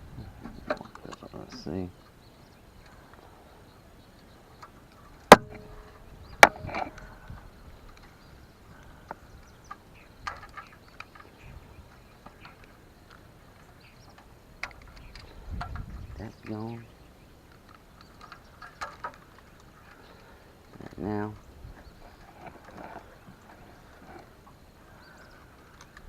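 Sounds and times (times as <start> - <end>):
sharp knocks with metallic ring: 5.3 - 7.0.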